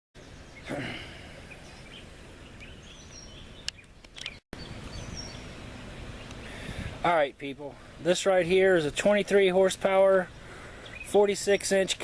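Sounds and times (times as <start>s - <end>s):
bird chirps: 0.2s - 6.6s, 10.2s - 12.0s
sharp clicks: 3.6s - 4.4s.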